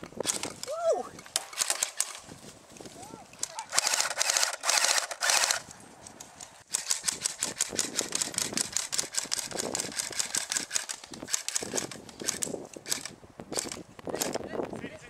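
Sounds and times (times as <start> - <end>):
airsoft guns firing: 1.3 - 2.2, 3.4 - 5.6.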